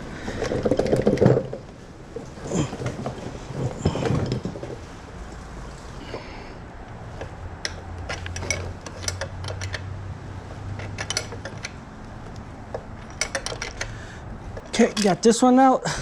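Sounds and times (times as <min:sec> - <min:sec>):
metal tools clinking on transmission: 0:07.1 - 0:09.9, 0:10.5 - 0:15.6.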